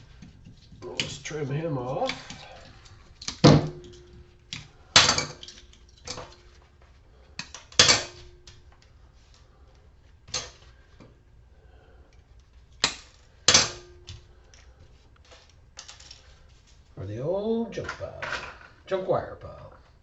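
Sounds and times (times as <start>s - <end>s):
hand cutters snipping wires: 1.9s - 6.4s.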